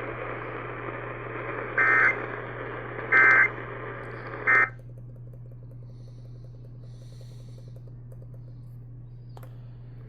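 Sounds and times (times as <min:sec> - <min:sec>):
radio static and hum: 0:00.0 - 0:04.9
buzzing digital tone bursts: 0:01.8 - 0:02.2, 0:03.1 - 0:03.5.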